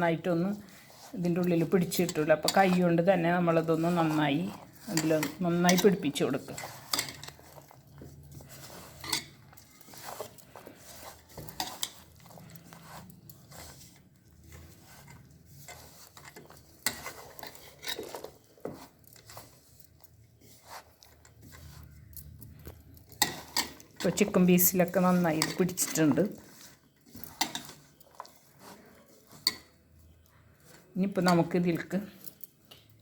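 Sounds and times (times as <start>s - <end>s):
hands rubbing marinade into chicken: 9.8s - 16.2s.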